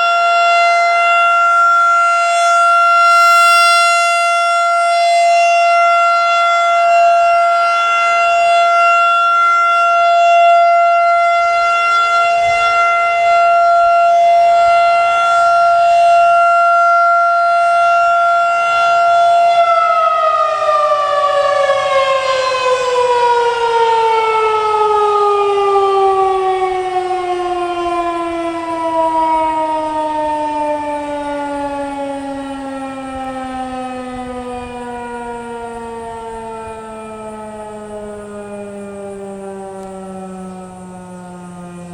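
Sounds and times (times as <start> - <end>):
warning siren: 0.0 - 41.9.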